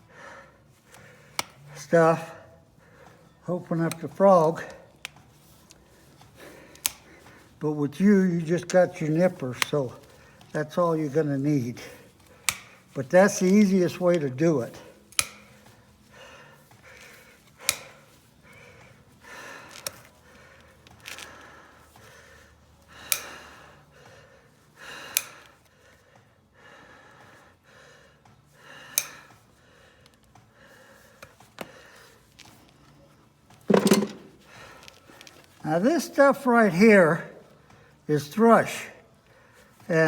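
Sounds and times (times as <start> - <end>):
hoof nippers snapping: 6.4 - 7.4, 12.2 - 14.4, 15.0 - 15.8, 16.8 - 18.1.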